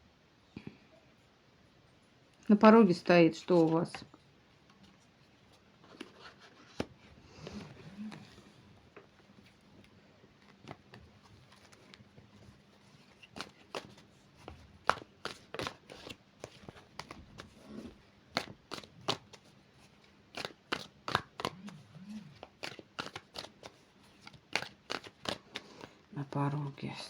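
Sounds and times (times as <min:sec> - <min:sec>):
cards being shuffled: 0:04.8 - 0:26.4
card snaps and slaps: 0:20.3 - 0:21.8, 0:22.4 - 0:25.9.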